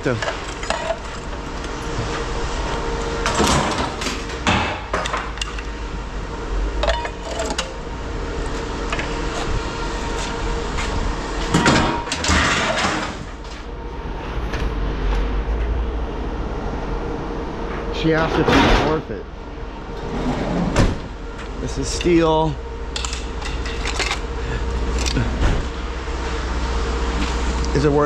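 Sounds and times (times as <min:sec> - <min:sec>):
steady hum: 0:00.0 - 0:28.0
scrap metal clattering: 0:00.1 - 0:01.4, 0:06.8 - 0:07.8, 0:11.5 - 0:13.4.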